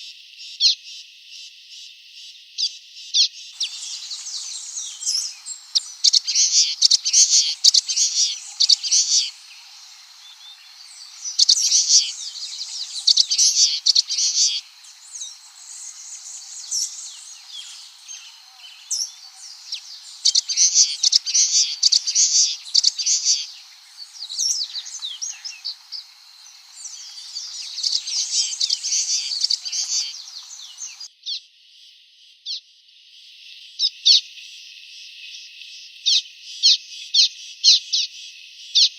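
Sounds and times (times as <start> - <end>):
bird singing high rapid chirps: 3.6 - 31.1.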